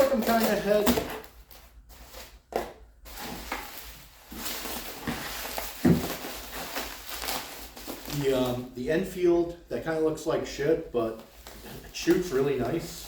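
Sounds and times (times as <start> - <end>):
rustling handling noise: 0.0 - 8.8, 11.0 - 13.0.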